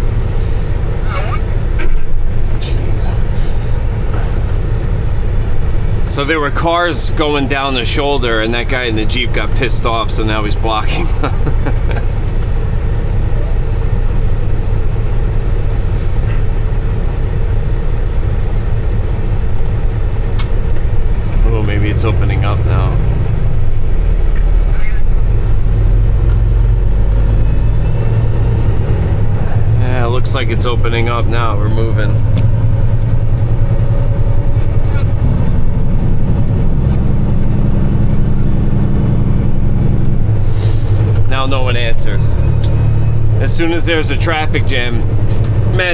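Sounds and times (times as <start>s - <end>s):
diesel truck engine idling: 0.0s - 45.9s.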